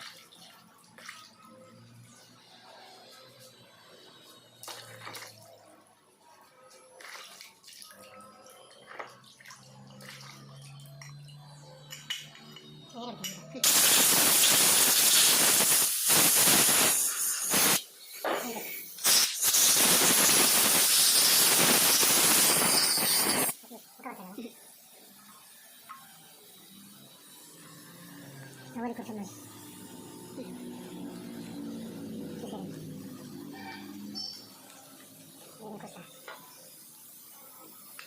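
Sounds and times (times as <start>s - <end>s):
hiss of rushing air: 13.6s - 23.6s.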